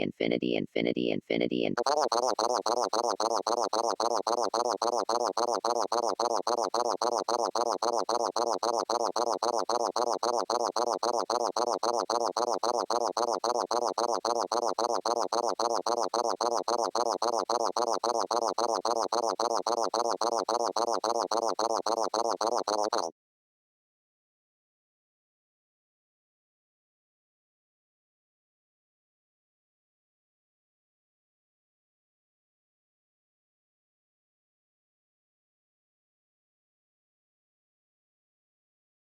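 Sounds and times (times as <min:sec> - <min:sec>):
looped buzzy electronic stutter: 0:00.8 - 0:23.1.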